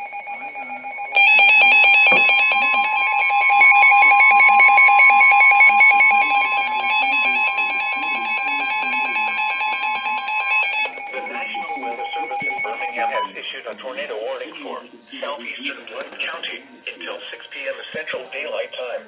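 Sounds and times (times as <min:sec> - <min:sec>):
two-tone alert alarm: 0:00.0 - 0:13.4.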